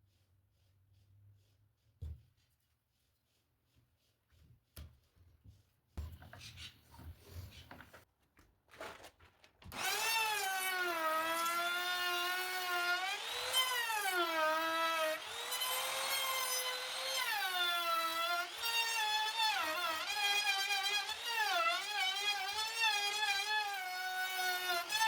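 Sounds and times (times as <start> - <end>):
power tool cutting wood: 9.7 - 25.0.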